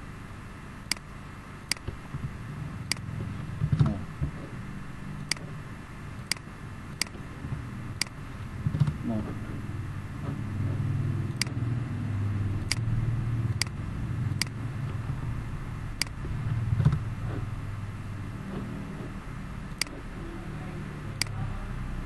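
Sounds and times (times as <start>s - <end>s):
computer mouse clicking: 0.9s - 1.1s, 1.7s - 2.0s, 2.9s - 4.0s, 5.2s - 5.6s, 6.2s - 7.3s, 11.2s - 11.6s, 12.6s - 12.9s, 13.5s - 15.0s, 18.4s - 20.1s
low rumble: 2.0s - 22.0s.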